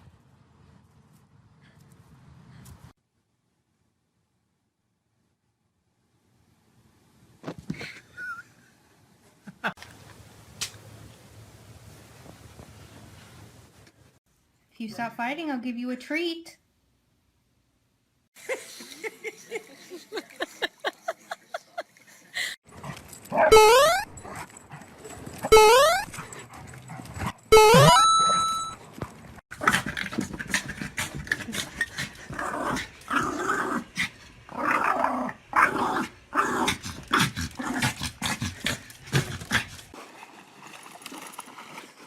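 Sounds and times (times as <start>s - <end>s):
dogs growling: 29.5s - 39.9s.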